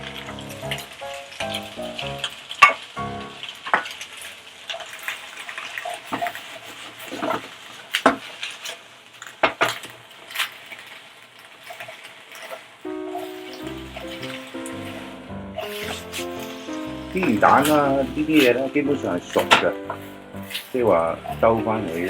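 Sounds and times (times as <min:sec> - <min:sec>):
food sizzling: 0:00.0 - 0:22.0
metal spatula scraping in a wok: 0:11.5 - 0:18.6.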